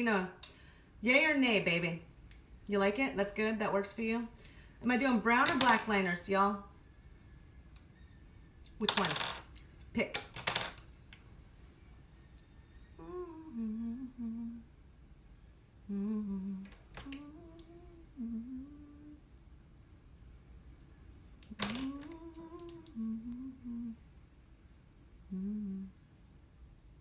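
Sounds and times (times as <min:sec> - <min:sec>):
woman humming: 0:13.0 - 0:14.8, 0:15.8 - 0:19.3, 0:21.6 - 0:24.0, 0:25.2 - 0:26.0.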